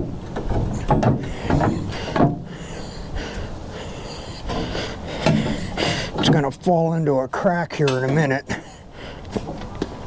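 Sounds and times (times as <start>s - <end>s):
man breathing and grunting: 1.2s - 6.3s.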